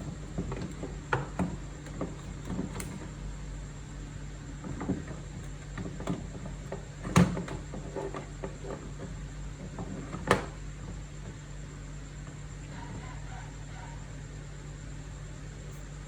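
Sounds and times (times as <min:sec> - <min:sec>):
light clicks and knocks: 0:00.0 - 0:03.2
steady low hum: 0:00.0 - 0:16.0.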